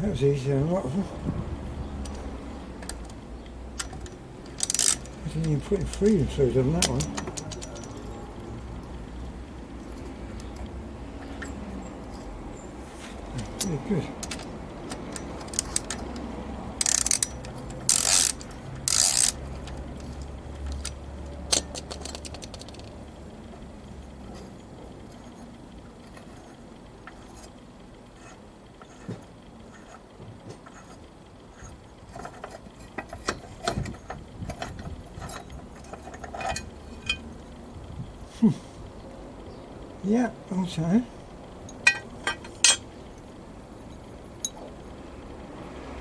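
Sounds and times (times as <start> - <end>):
ratchet wrench clicking: 1.9 - 12.5, 13.2 - 27.6
tools knocking on metal: 6.7 - 8.5, 41.7 - 42.9.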